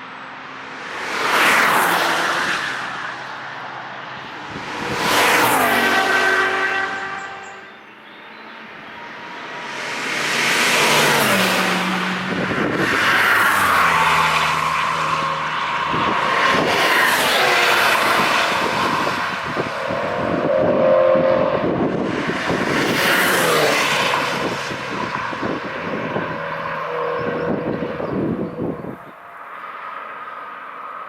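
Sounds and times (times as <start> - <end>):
cars passing at speed: 0.0 - 31.0
tyre and wind noise: 10.8 - 29.2.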